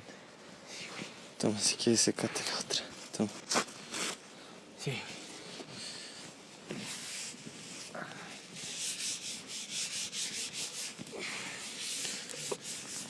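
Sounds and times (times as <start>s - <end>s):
cloth rubbing briskly: 6.7s - 13.0s.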